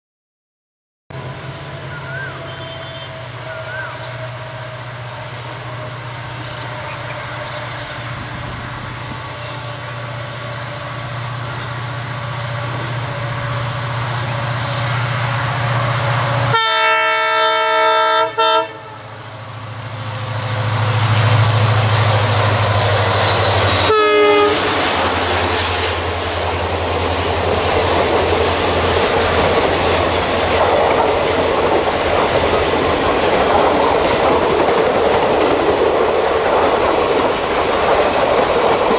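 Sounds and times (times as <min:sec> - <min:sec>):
diesel locomotive engine humming: 0:01.1 - 0:38.9
train wheels rolling on track: 0:01.2 - 0:38.9
train horn: 0:01.4 - 0:10.0, 0:16.4 - 0:19.2, 0:23.7 - 0:25.2.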